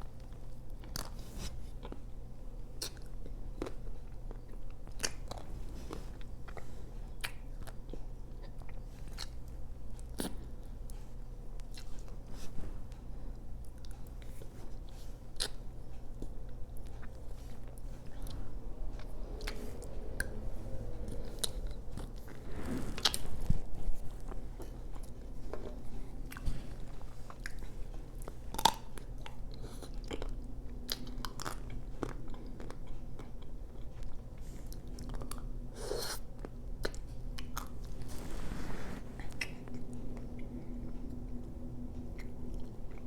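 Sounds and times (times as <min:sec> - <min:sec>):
wet chewing and mouth sounds: 0:00.0 - 0:38.2, 0:39.2 - 0:43.0.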